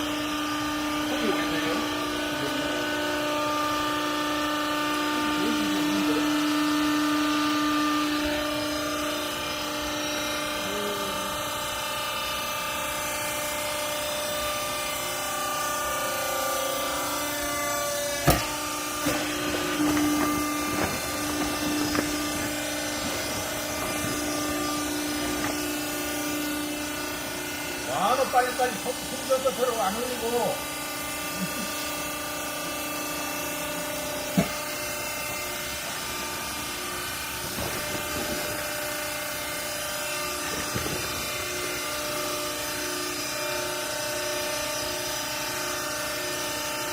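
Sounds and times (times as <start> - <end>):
hydraulic baler motor humming: 0.0 - 46.9
sharp knocks: 18.2 - 25.7.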